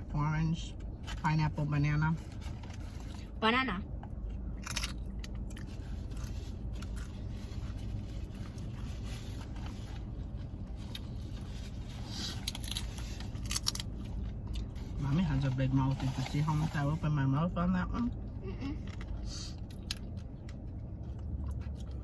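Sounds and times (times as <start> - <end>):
car air conditioning hum: 0.0 - 22.0
food crunching: 4.1 - 14.8
person chewing food: 4.1 - 14.8, 18.6 - 22.0.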